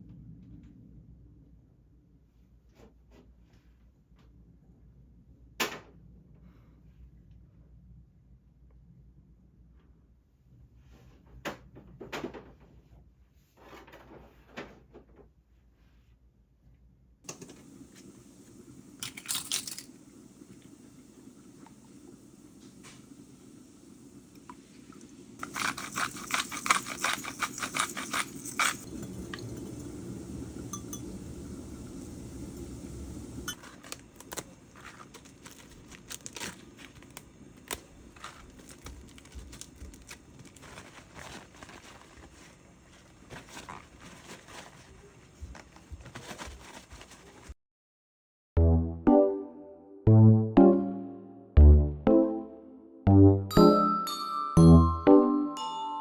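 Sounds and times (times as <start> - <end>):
low steady hum: 17.3 - 46.8
objects clicking and scraping: 19.0 - 20.0, 25.4 - 29.4.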